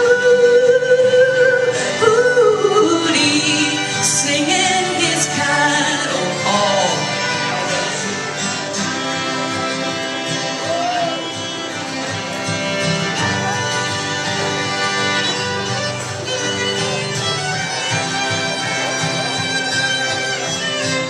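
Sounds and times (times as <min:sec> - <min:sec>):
fiddle melody: 0:00.0 - 0:21.0
guitar accompaniment: 0:00.0 - 0:21.0.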